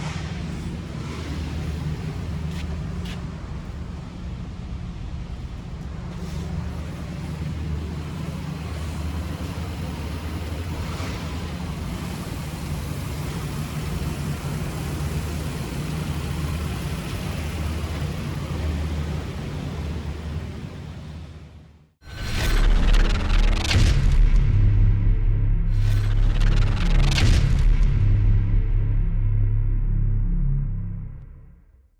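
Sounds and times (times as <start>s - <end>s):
pickup engine running: 5.4s - 20.8s.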